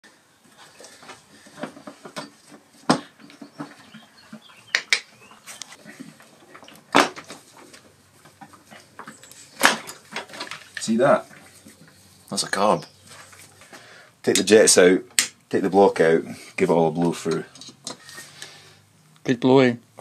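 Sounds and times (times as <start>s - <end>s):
metal parts and tools clicking: 17.2s - 18.0s.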